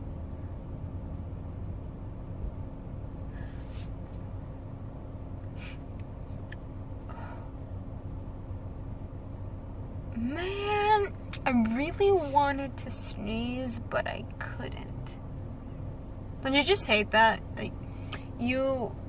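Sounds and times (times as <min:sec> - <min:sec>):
car cabin hum: 0:00.0 - 0:19.0
sharp inhales and sniffs: 0:03.3 - 0:04.0, 0:05.5 - 0:05.9.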